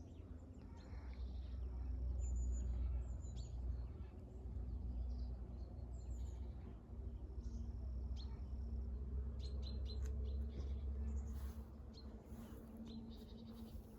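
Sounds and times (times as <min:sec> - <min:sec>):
songbird chirps: 0:09.3 - 0:13.9.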